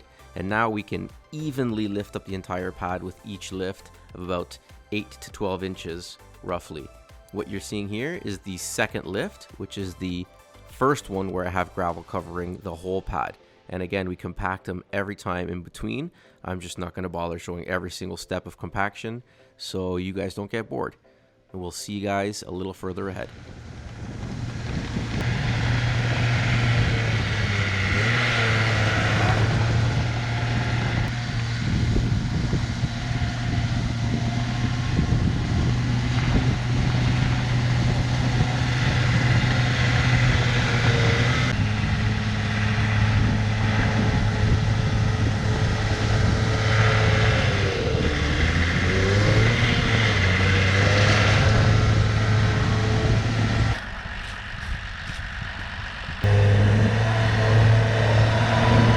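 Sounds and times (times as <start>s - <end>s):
diesel engine running under load: 23.3s - 58.9s.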